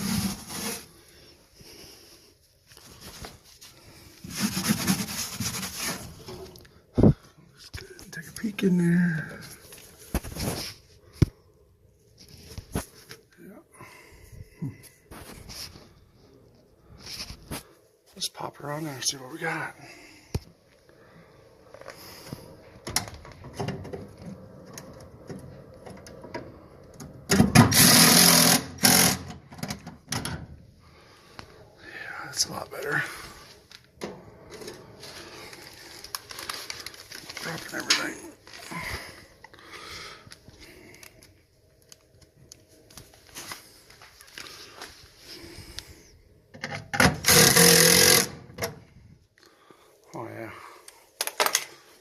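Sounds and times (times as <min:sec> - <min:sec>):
furnace parts clicking and knocking: 0:22.8 - 0:27.8, 0:28.8 - 0:30.6, 0:46.5 - 0:47.5
loud burst of noise: 0:27.6 - 0:29.3
small electric motor running: 0:47.3 - 0:48.3
clicks and knocks of parts handled: 0:50.9 - 0:51.8.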